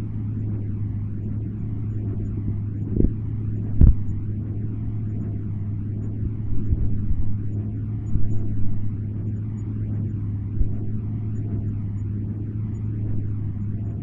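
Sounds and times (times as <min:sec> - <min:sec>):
low hum with rumbling noise: 0:00.0 - 0:14.0
dull thumps: 0:03.0 - 0:04.1.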